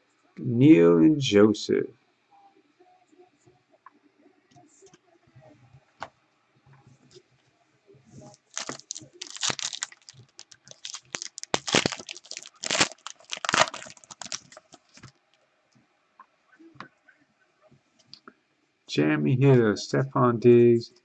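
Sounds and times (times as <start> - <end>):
wrapper tearing and crinkling: 8.3 - 15.1.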